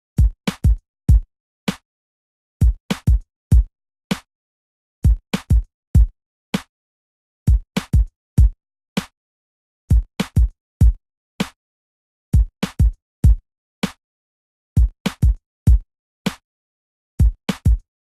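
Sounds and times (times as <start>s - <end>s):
drum machine beat: 0.2s - 1.2s, 2.6s - 3.7s, 5.1s - 6.1s, 7.5s - 8.6s, 9.9s - 11.0s, 12.4s - 13.4s, 14.8s - 15.8s, 17.2s - 17.8s.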